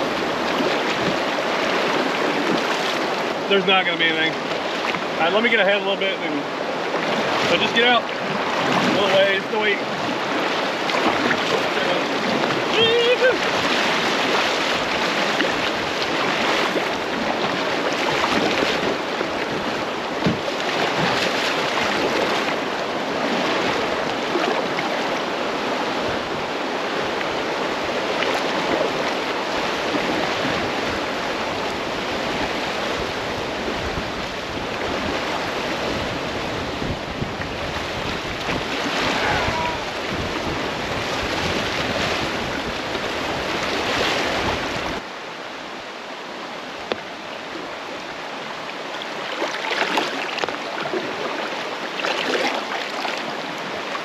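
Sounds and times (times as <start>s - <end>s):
river water rushing: 0.0s - 54.0s.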